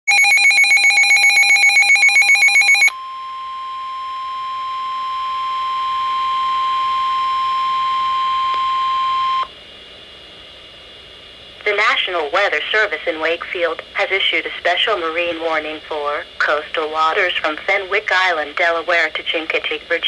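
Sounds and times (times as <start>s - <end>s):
steady warning alarm tone: 0.1s - 9.5s
faint radio hiss: 11.6s - 20.0s.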